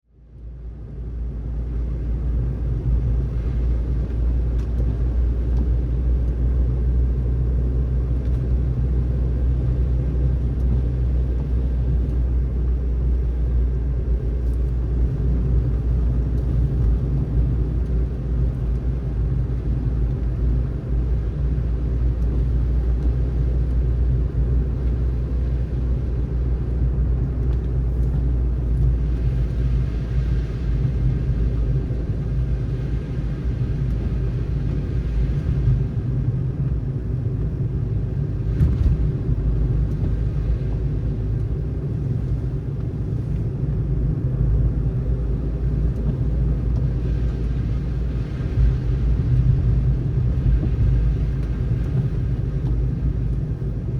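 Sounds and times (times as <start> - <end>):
car tyre and engine rumble: 0.0 - 53.9.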